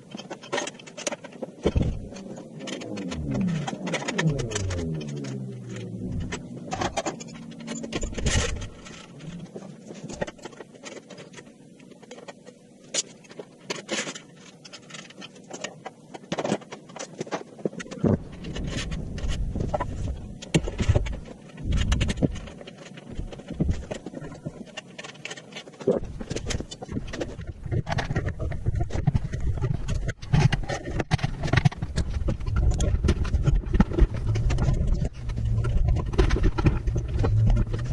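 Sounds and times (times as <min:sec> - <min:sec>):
clatter of clicks and knocks: 0:00.0 - 0:37.9
low rumble: 0:02.8 - 0:09.5, 0:31.8 - 0:37.9.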